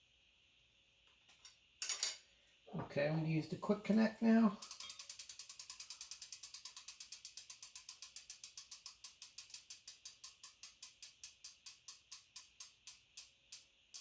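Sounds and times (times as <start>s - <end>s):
bicycle freehub ticking: 4.6s - 14.0s.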